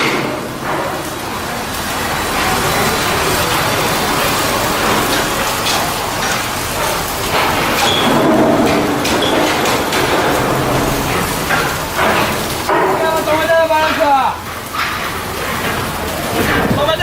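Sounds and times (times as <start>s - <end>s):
mechanical clatter: 4.8s - 17.0s.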